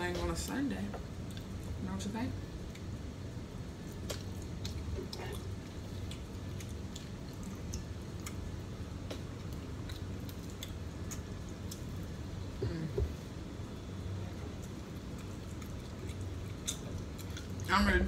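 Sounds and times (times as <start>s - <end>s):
steady low hum: 0.0s - 18.0s
close chewing with mouth clicks: 1.2s - 1.8s, 3.8s - 12.6s, 14.3s - 17.9s.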